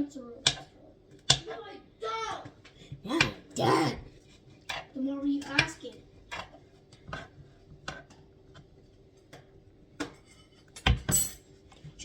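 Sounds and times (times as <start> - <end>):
knife chopping on cutting board: 4.7 - 8.7.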